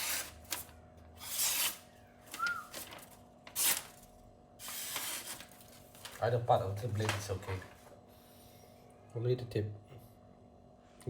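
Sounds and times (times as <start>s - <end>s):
knife slicing paper: 0.0s - 4.0s, 4.6s - 5.7s.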